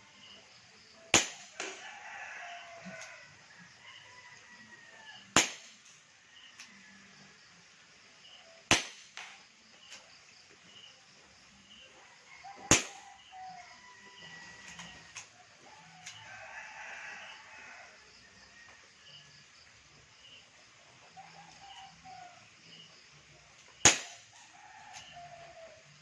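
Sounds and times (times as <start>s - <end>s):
airsoft revolver shots: 1.1s - 1.8s, 5.3s - 6.0s, 8.7s - 10.0s, 12.7s - 13.0s, 23.8s - 24.3s.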